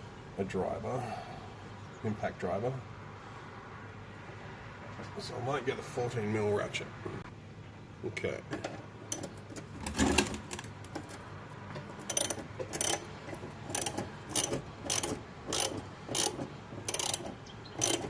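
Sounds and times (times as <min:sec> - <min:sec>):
ratchet pawl clicking: 0:12.0 - 0:18.0.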